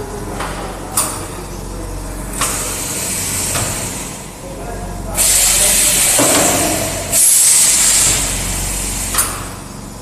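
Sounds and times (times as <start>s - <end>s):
steady electrical hum: 0.0s - 10.0s
pneumatic air hiss: 2.4s - 4.3s, 5.2s - 9.6s.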